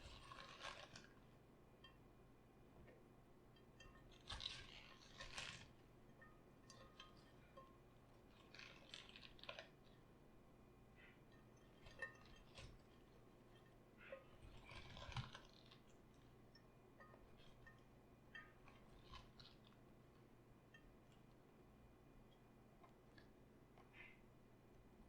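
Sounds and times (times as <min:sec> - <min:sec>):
cabbage crunching by hand: 0:00.0 - 0:01.1, 0:04.2 - 0:05.7, 0:14.4 - 0:15.8.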